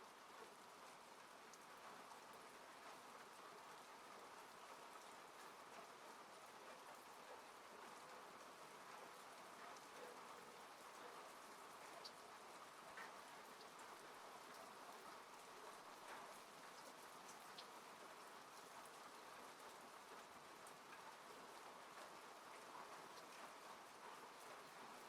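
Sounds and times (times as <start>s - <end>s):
rain on a car: 0.0s - 25.0s
raindrops ticking: 16.0s - 19.1s.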